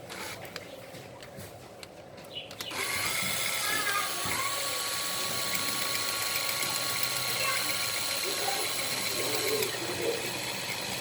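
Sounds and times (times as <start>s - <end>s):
electric drill whining: 2.7s - 11.0s.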